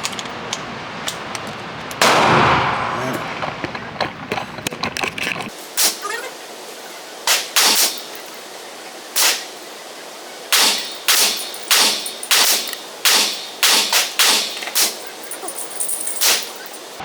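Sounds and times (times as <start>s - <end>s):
gunshots with echo: 2.0s - 4.0s, 10.5s - 15.1s.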